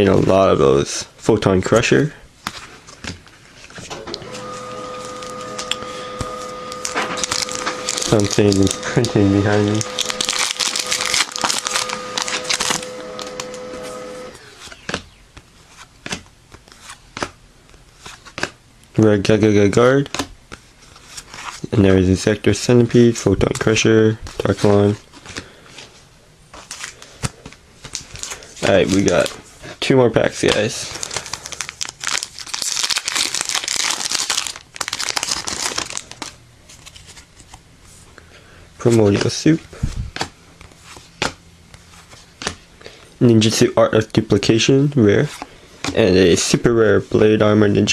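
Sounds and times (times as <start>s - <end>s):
printer whirring and clicking: 3.9s - 14.6s
foil wrapper crinkling and tearing: 4.3s - 14.3s, 26.6s - 29.4s, 30.3s - 37.3s.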